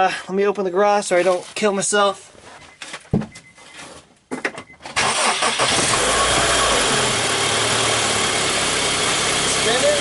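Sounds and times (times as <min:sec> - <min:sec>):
car engine cranking and starting: 0:04.7 - 0:10.0
engine idling: 0:05.2 - 0:10.0.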